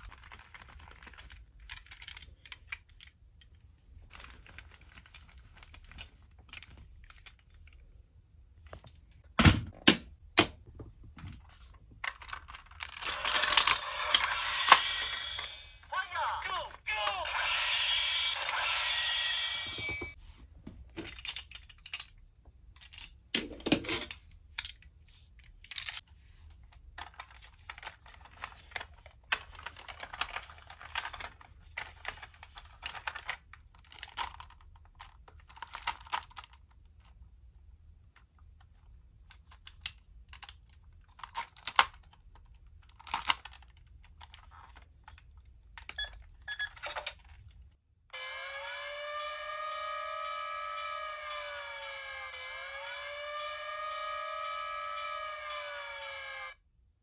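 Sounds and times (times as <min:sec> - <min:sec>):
plastic toy parts clicking and snapping: 0:00.0 - 0:03.5, 0:12.0 - 0:15.5, 0:21.0 - 0:24.9, 0:25.5 - 0:26.0, 0:26.7 - 0:37.1, 0:39.2 - 0:46.3.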